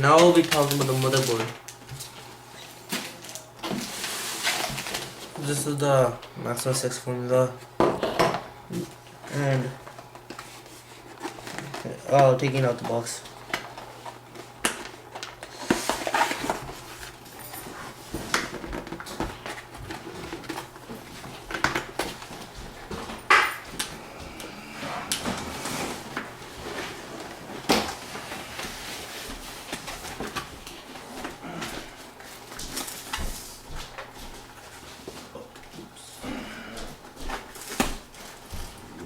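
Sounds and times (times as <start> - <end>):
box packaging rustling and scraping: 0.1 - 5.6, 8.8 - 23.3, 24.7 - 33.7.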